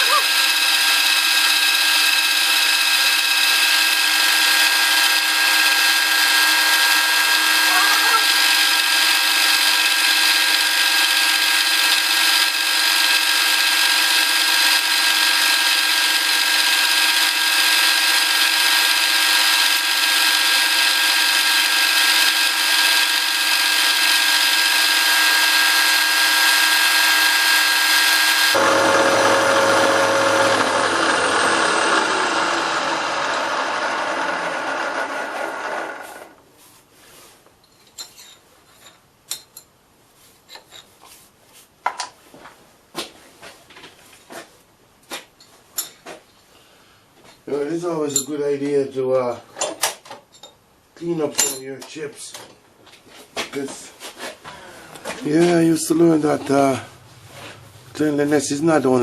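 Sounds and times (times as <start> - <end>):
milling machine whine: 0.0 - 36.4.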